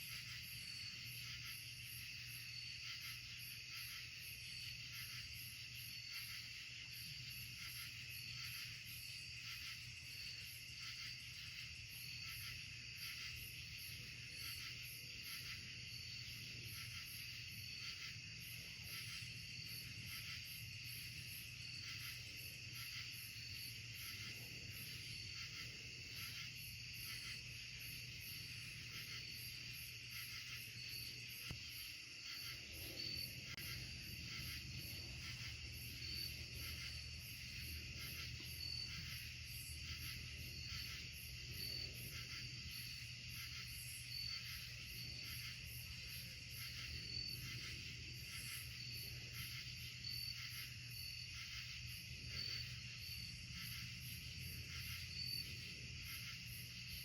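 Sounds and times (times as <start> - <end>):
crickets trilling: 0.0 - 57.0.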